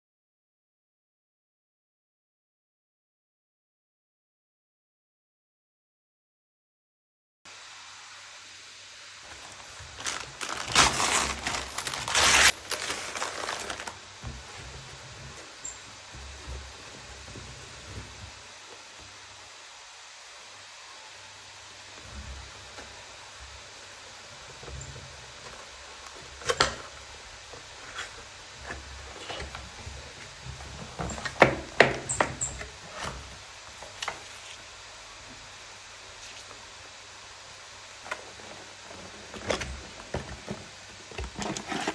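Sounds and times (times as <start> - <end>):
faint hiss: 7.5 - 41.9
packaging knocks and clicks: 9.4 - 14.0.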